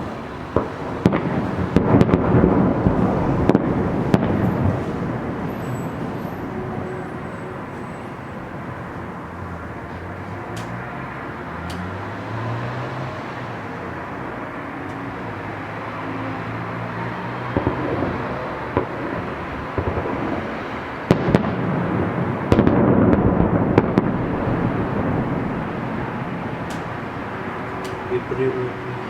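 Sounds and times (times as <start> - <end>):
firework bangs and crackles: 0.0 - 10.8, 17.4 - 28.7
steady background noise: 0.0 - 29.0.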